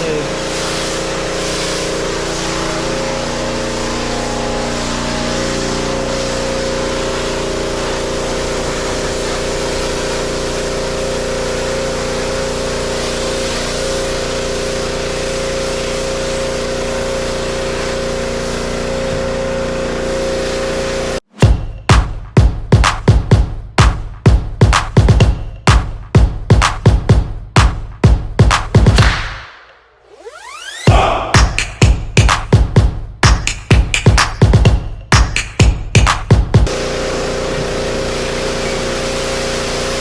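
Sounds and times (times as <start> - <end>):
high-pressure water jet hissing: 0.0 - 21.1, 36.7 - 40.0
pressure washer motor hum: 0.0 - 21.2, 36.6 - 40.0.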